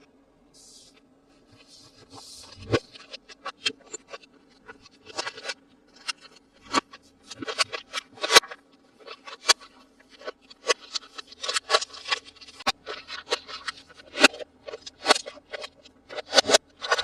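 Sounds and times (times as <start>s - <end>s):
faint low hum: 0.0s - 17.0s
plastic and cardboard packaging crinkling: 5.0s - 17.0s.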